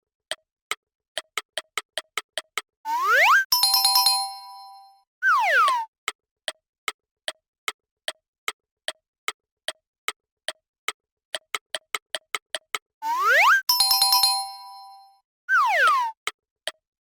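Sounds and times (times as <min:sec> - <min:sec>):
clock-like ticking: 0:01.2 - 0:04.2
falling whistle-like glide: 0:02.9 - 0:03.5, 0:13.0 - 0:13.6.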